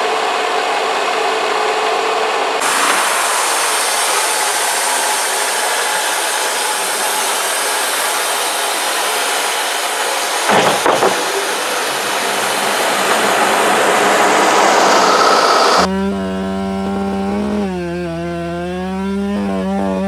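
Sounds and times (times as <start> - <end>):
band sawmill running: 0.0 - 15.9
loud rattle: 10.3 - 15.9.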